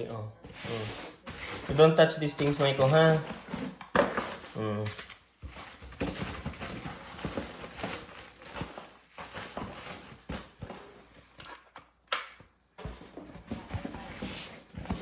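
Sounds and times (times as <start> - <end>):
items knocking and clicking: 1.3 - 15.0.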